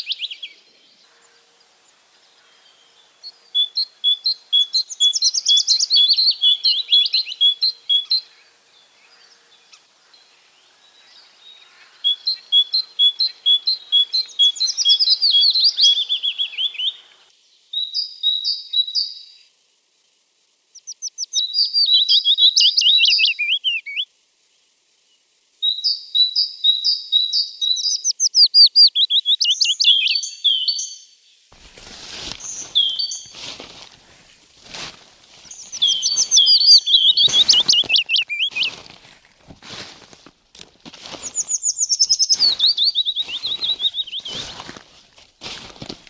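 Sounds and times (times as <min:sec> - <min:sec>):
songbird trilling: 0:00.0 - 0:17.2, 0:20.8 - 0:24.1, 0:25.6 - 0:31.1, 0:32.2 - 0:33.9, 0:35.4 - 0:38.9, 0:41.2 - 0:44.8.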